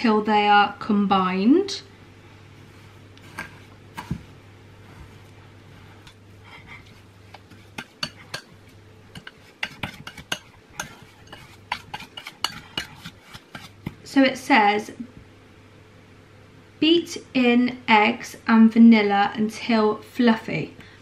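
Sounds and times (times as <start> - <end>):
utensil scraping a mixing bowl: 3.2 - 4.2, 5.7 - 14.1.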